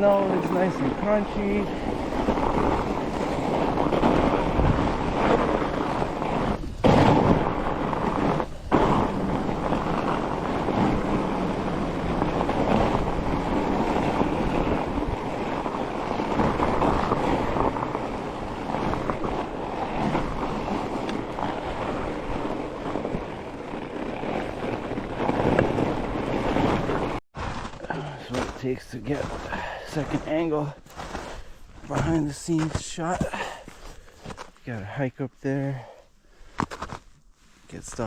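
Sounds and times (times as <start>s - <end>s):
wind on microphone: 0.0s - 27.2s
bike tyres crunching on snow: 0.0s - 38.0s.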